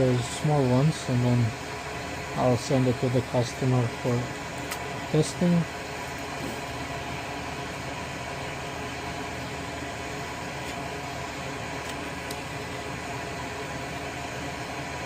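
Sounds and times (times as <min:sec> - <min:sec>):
electric blower running: 0:00.0 - 0:15.0.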